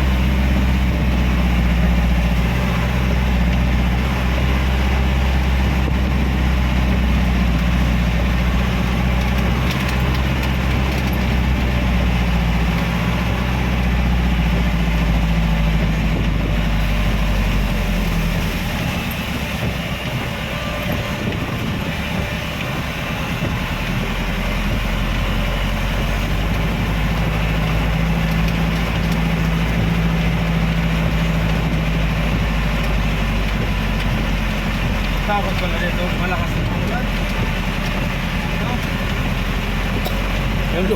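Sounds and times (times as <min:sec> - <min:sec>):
car engine drone: 0:00.0 - 0:40.9
tyres hissing on wet road: 0:16.6 - 0:40.9.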